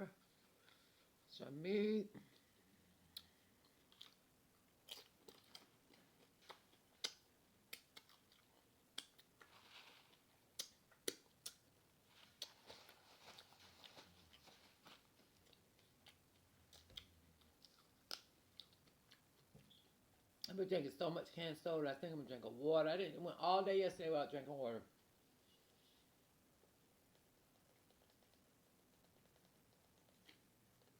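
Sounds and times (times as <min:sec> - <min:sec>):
person chewing crunchy chips: 0:03.2 - 0:11.6, 0:12.3 - 0:19.6
mouth smacks and clicks: 0:06.4 - 0:09.4, 0:10.5 - 0:11.7, 0:27.1 - 0:30.9.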